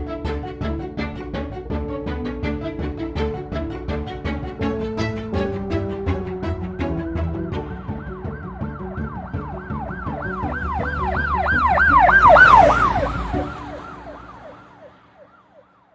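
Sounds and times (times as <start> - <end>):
background music: 0.0 - 15.2
emergency siren yelping: 7.7 - 15.9.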